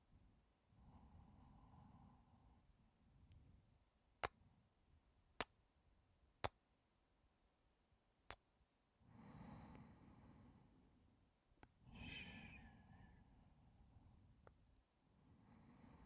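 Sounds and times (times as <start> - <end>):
soft whistling breath out: 11.9 - 13.4.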